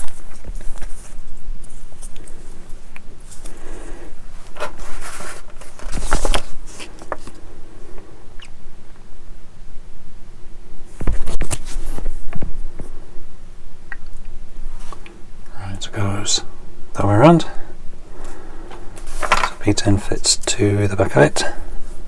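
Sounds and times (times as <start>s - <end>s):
plastic parts clicking and scraping: 18.7s - 19.8s.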